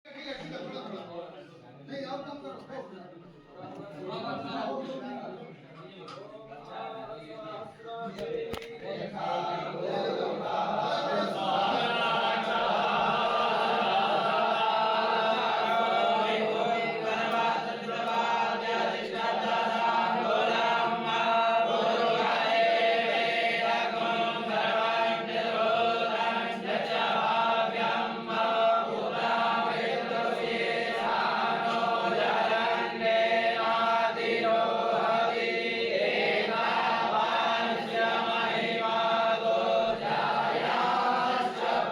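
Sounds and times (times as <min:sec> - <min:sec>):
group chanting in unison: 0:08.2 - 0:41.9.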